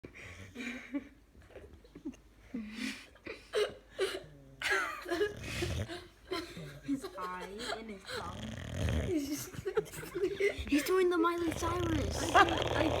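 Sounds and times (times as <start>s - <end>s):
dog snoring: 5.2s - 5.9s, 8.2s - 9.6s, 10.6s - 13.0s.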